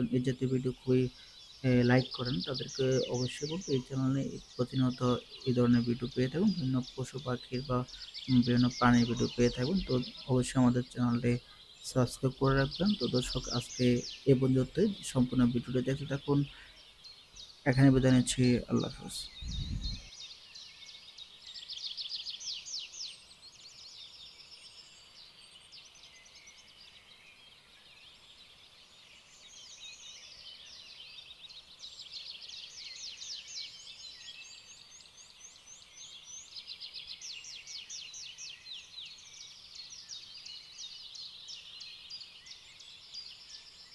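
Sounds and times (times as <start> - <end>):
birds chirping and trilling: 0.0 - 43.9.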